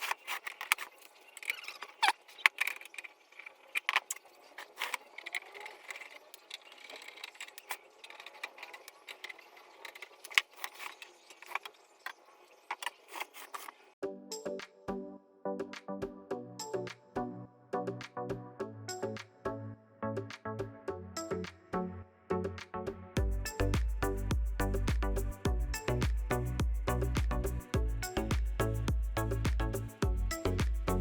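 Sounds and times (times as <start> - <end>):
music: 14.0 - 31.0.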